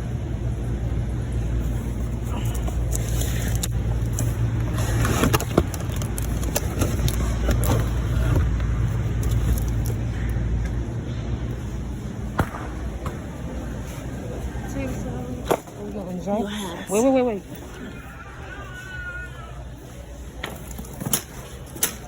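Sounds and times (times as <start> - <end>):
shopping cart wheels rumbling: 0.0 - 11.0
cart clicks and rattles: 2.5 - 10.1.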